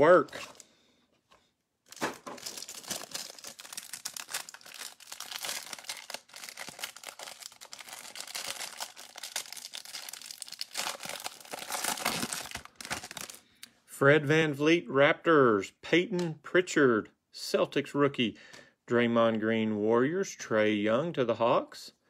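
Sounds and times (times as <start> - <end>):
plastic wrapper crinkling and tearing: 1.8 - 13.5.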